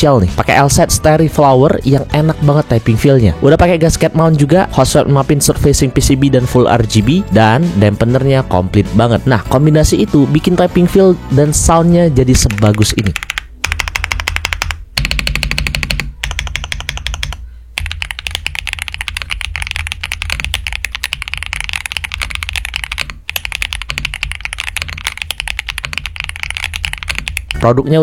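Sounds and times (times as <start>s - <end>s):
fast typing on mechanical keyboard: 12.4s - 27.6s.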